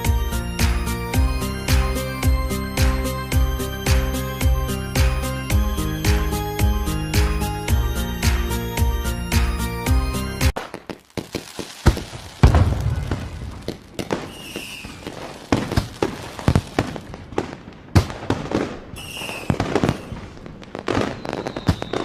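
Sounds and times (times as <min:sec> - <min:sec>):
sharp bangs and crackling pops: 0:10.5 - 0:22.0
deep boom: 0:12.4 - 0:13.6
short high whistles: 0:14.3 - 0:15.1, 0:19.0 - 0:20.2, 0:21.0 - 0:22.0.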